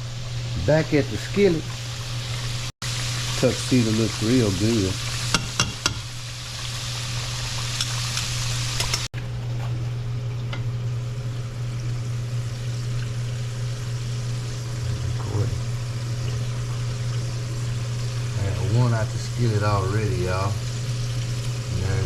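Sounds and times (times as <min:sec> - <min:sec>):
food sizzling in hot oil: 0:00.0 - 0:09.1, 0:10.3 - 0:22.0
steady low hum: 0:09.2 - 0:22.0.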